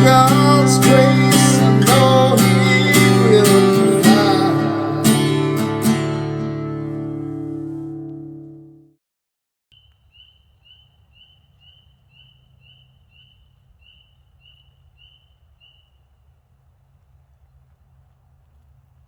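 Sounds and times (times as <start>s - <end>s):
acoustic guitar music: 0.0s - 9.0s
low steady outdoor rumble: 9.9s - 19.0s.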